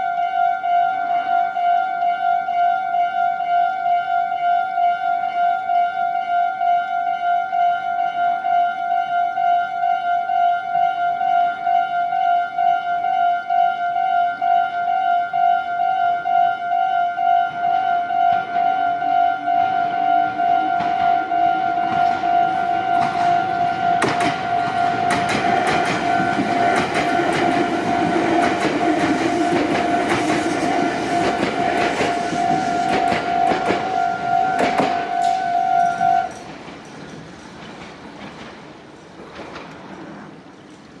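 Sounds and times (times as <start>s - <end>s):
train wheels clacking on rails: 20.6s - 41.0s.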